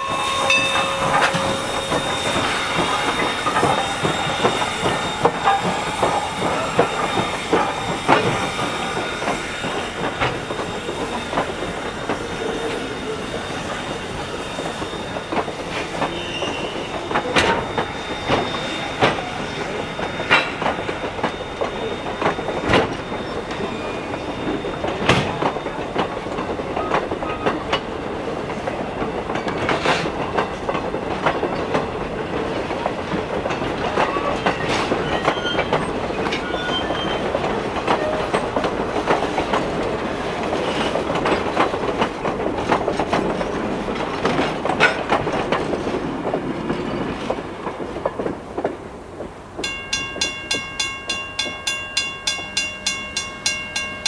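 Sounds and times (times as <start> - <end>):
high wheel squeal: 0.0 - 45.2
railroad cars rolling past: 0.0 - 54.0
wheels clicking over rail joints: 0.0 - 54.0.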